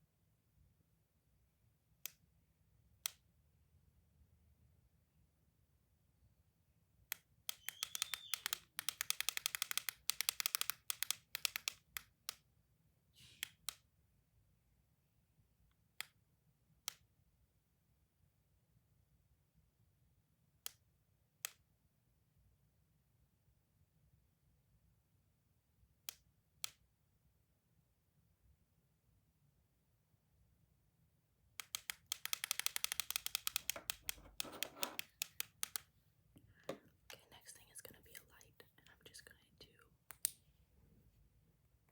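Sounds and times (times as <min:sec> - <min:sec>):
toys clicking: 0:07.5 - 0:12.4, 0:31.6 - 0:35.9.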